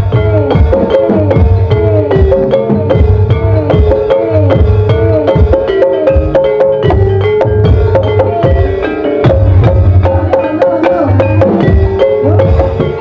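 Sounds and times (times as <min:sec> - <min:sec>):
deep low drum beats: 0:00.0 - 0:13.0
pitch-bending drum strokes: 0:00.0 - 0:13.0
struck mallet instrument notes: 0:00.0 - 0:13.0.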